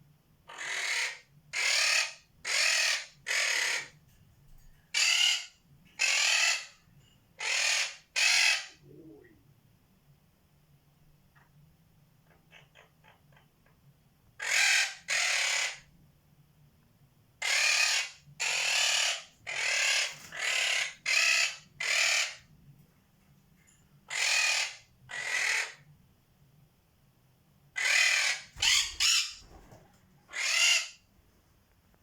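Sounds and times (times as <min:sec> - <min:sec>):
parrot squawking harshly: 0:00.5 - 0:03.9, 0:05.0 - 0:06.7, 0:07.4 - 0:08.8, 0:14.4 - 0:15.8, 0:17.4 - 0:22.4, 0:24.1 - 0:25.8, 0:27.8 - 0:29.4, 0:30.3 - 0:31.0.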